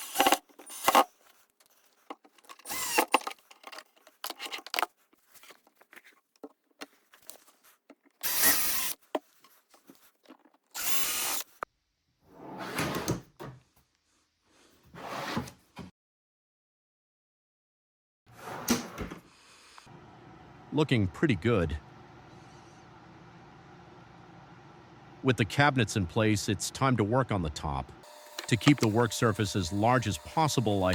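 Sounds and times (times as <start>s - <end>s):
power drill driving screws: 0.0s - 1.1s, 2.4s - 4.5s, 8.2s - 9.0s, 10.7s - 11.6s, 28.0s - 30.9s
hardware clicking and rattling: 0.0s - 8.2s, 28.1s - 30.9s.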